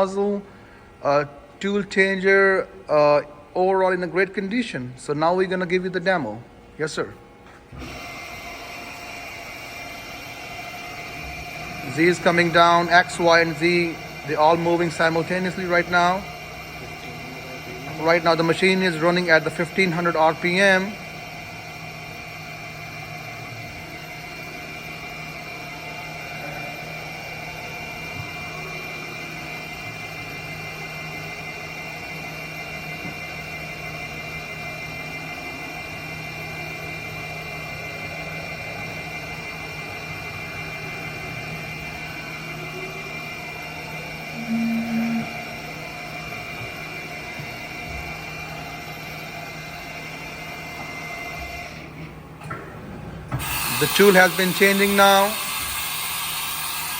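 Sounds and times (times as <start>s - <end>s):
machining center humming and whining: 0.0s - 56.9s
brief loud tone: 44.3s - 45.8s.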